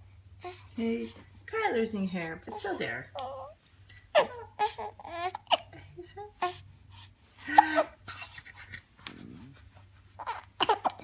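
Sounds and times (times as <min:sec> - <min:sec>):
baby hiccuping: 0:04.1 - 0:05.8, 0:10.2 - 0:11.0
soft breathing: 0:05.8 - 0:10.2.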